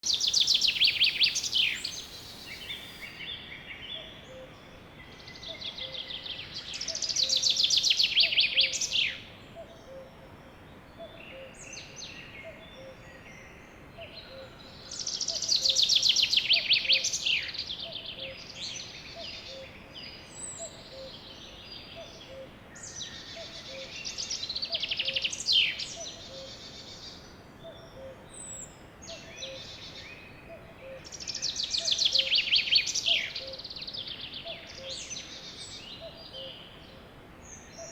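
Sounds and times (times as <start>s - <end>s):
songbird trilling: 0.0s - 3.3s
soft bird chirps: 0.0s - 8.9s.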